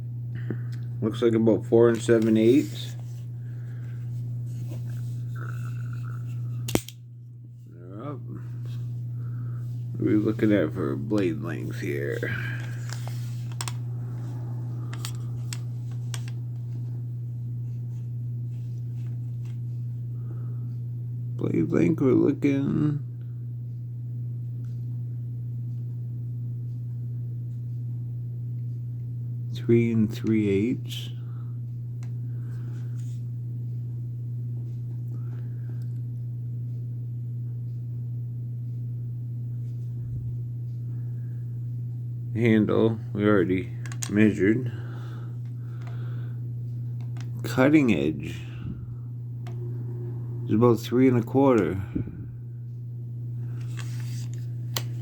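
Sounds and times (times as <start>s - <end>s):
steady low hum: 0.0s - 55.0s
soft handling noises: 1.5s - 6.8s, 8.4s - 19.8s, 53.4s - 55.0s.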